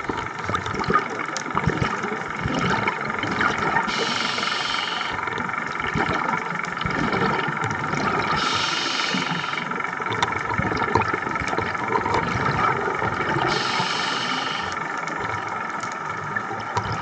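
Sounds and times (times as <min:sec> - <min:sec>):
boat engine running: 0:00.0 - 0:17.0
hiss: 0:03.9 - 0:05.2, 0:08.4 - 0:09.7, 0:13.5 - 0:14.8.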